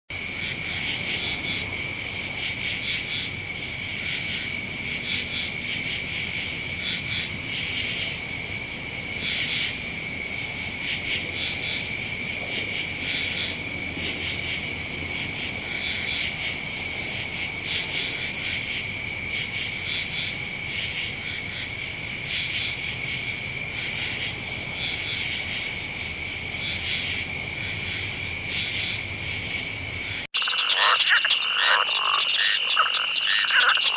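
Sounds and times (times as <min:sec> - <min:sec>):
insects chirping in pulses: 0:00.1 - 0:33.9
steady high insect trill: 0:00.1 - 0:33.9.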